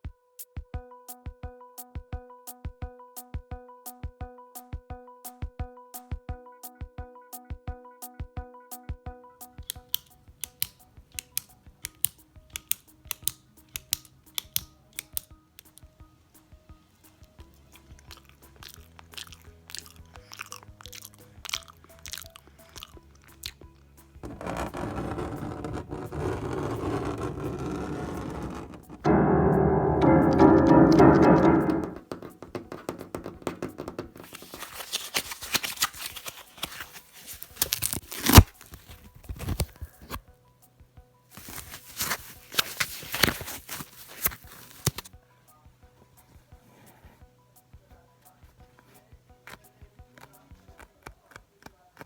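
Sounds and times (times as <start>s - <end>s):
person chewing crisp food: 18.1s - 23.6s
tearing: 24.2s - 29.0s, 34.2s - 39.8s, 41.4s - 45.1s
music bed: 26.9s - 32.4s
dense crinkling and crackling: 34.2s - 40.1s, 41.4s - 45.1s.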